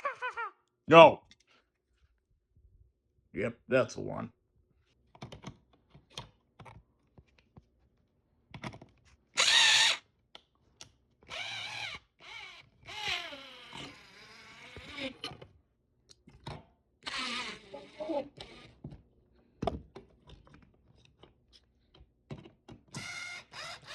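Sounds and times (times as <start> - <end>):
power drill running: 9.4 - 10.0, 11.3 - 15.2, 17.0 - 18.8, 23.0 - 23.9.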